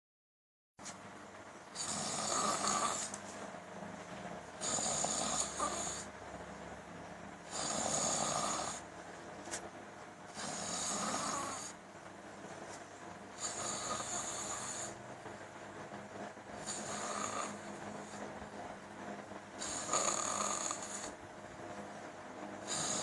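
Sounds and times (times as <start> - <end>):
person snoring: 1.8 - 3.2, 4.6 - 6.1, 7.5 - 8.8, 10.3 - 11.8, 13.4 - 15.0, 16.6 - 18.2, 19.6 - 21.2, 22.6 - 23.0.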